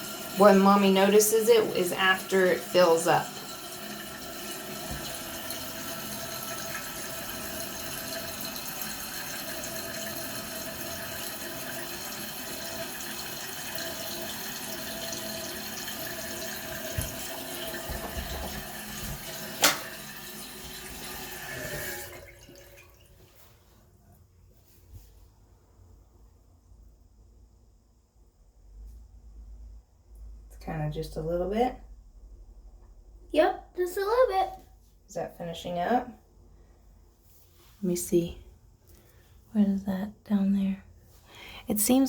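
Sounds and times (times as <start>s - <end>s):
toilet tank refilling: 0.0s - 23.5s.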